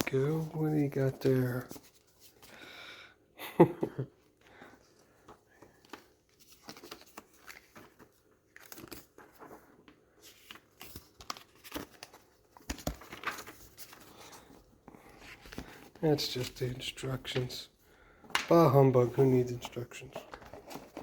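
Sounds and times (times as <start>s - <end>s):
paper and plastic crinkling: 4.5s - 17.6s, 18.4s - 21.0s.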